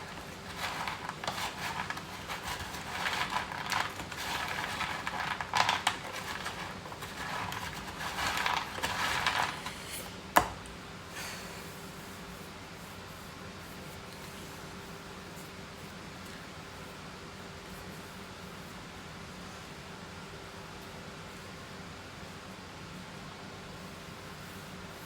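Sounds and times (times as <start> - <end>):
spoon scraping cat food dish: 0.0 - 9.8.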